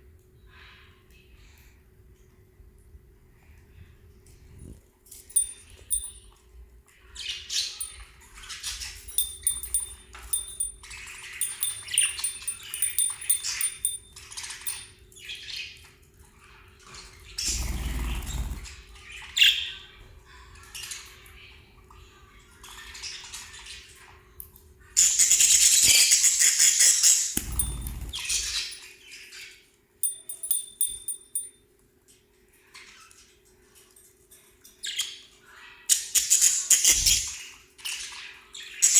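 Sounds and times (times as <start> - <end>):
small parrots chirping: 11.4 - 14.1, 27.4 - 28.8.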